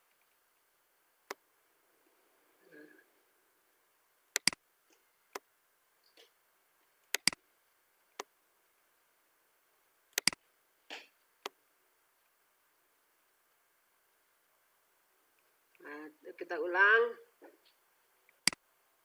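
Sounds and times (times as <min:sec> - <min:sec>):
computer mouse clicks: 0:04.3 - 0:04.6, 0:07.0 - 0:07.4, 0:10.1 - 0:11.6.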